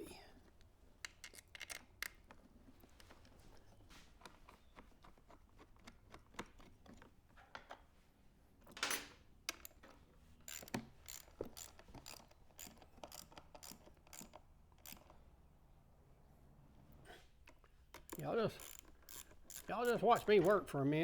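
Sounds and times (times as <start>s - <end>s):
hand tools clinking on metal: 18.1s - 20.9s.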